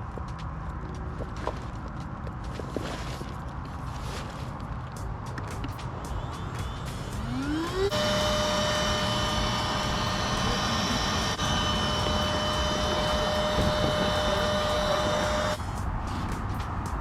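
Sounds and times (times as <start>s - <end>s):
electric pump whining: 7.2s - 15.6s.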